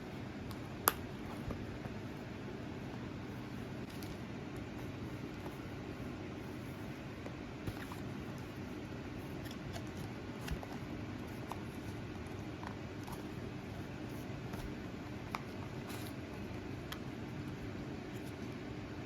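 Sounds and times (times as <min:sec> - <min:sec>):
low room hum: 0:00.0 - 0:19.0.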